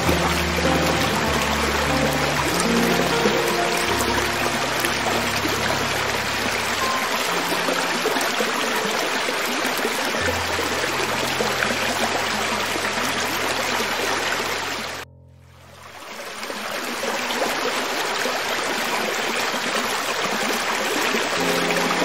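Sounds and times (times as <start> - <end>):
low sustained music tones: 0.0 - 16.7, 21.4 - 22.0
creek water flowing over rocks: 0.0 - 22.0.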